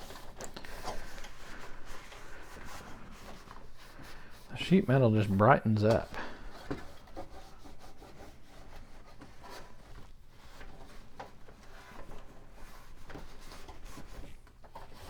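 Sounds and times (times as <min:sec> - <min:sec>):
cloth wiping sheet metal: 0:00.8 - 0:10.6.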